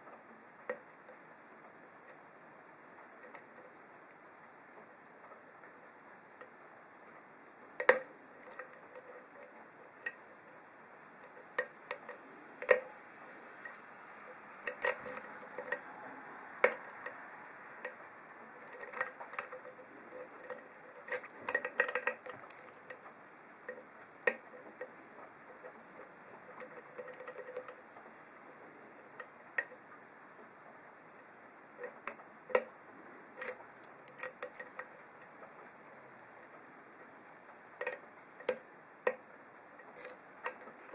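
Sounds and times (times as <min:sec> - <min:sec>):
lock picking clicks and ticks: 0:11.2 - 0:15.8, 0:26.6 - 0:27.8, 0:33.4 - 0:35.3, 0:37.8 - 0:39.2, 0:39.9 - 0:40.9.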